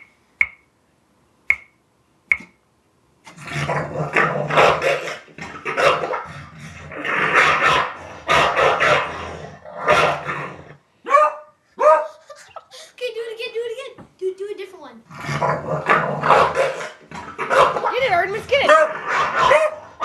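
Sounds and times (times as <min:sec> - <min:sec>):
sharp clicks: 0:01.5 - 0:02.6
dog growling and barking: 0:03.3 - 0:11.2, 0:15.1 - 0:20.0.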